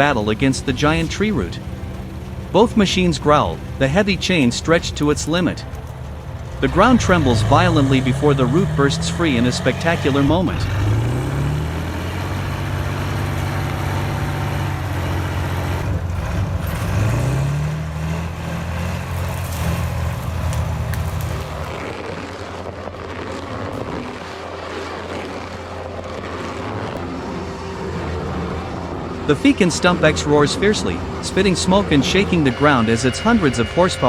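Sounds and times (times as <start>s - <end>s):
diesel engines revving: 0.0s - 34.0s
machine drone: 0.0s - 34.0s.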